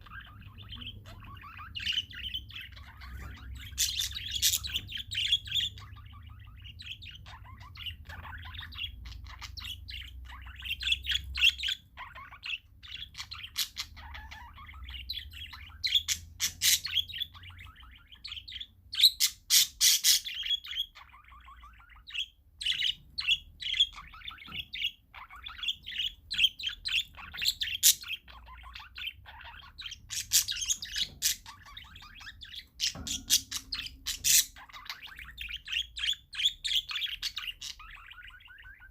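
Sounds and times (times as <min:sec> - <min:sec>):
parakeets chirping: 0:00.0 - 0:38.9
harsh parakeet squawks: 0:15.6 - 0:38.9.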